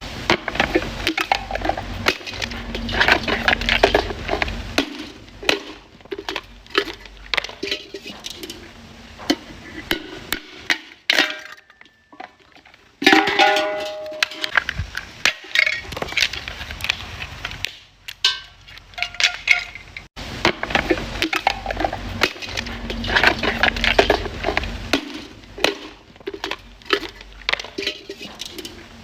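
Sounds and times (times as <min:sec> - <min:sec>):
scrap metal clinking and clattering: 0:00.3 - 0:16.9, 0:18.2 - 0:29.0
ringing clank: 0:13.1 - 0:14.5.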